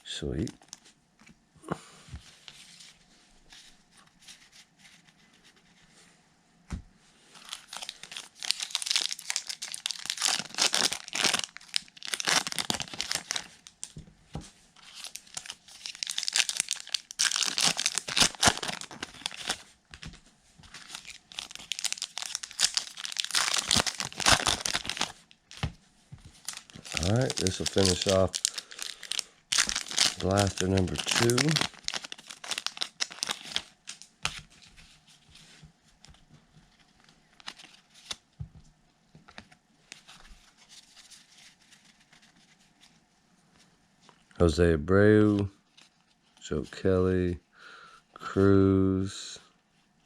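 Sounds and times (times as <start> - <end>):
plastic wrappers crinkling and tearing: 7.4 - 14.0, 14.8 - 25.7, 26.3 - 34.7, 36.7 - 38.2.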